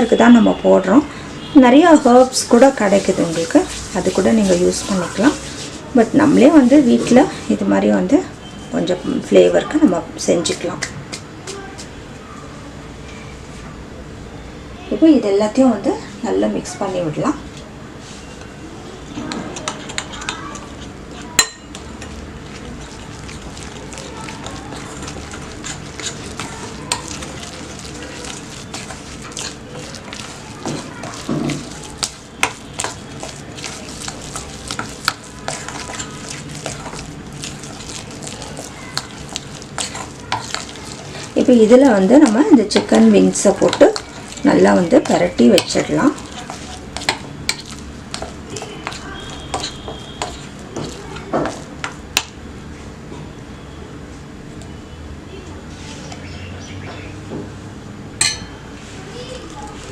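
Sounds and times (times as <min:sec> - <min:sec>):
spoon scraping paste in bowl: 0:01.9 - 0:07.4, 0:19.3 - 0:52.3.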